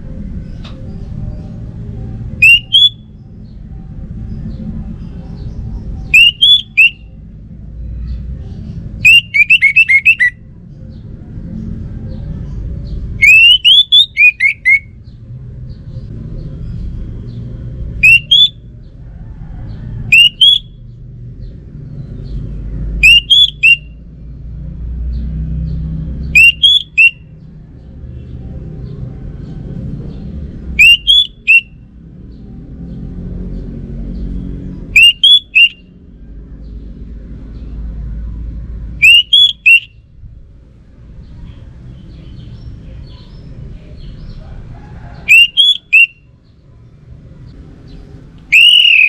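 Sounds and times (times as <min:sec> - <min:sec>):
thrush singing whistled notes: 0:02.4 - 0:03.2, 0:06.1 - 0:07.1, 0:09.0 - 0:10.4, 0:13.2 - 0:15.0, 0:18.0 - 0:18.7, 0:20.1 - 0:20.8, 0:23.0 - 0:24.0, 0:26.3 - 0:27.4, 0:30.8 - 0:31.8, 0:34.9 - 0:35.9, 0:39.0 - 0:40.0, 0:45.2 - 0:46.3, 0:48.4 - 0:49.0.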